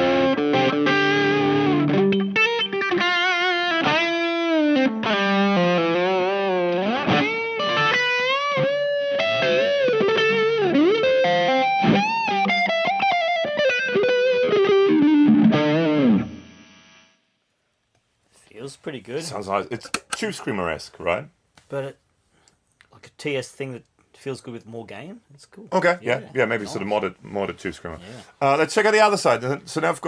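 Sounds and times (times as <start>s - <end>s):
overdriven electric guitar lead: 0.0s - 17.0s.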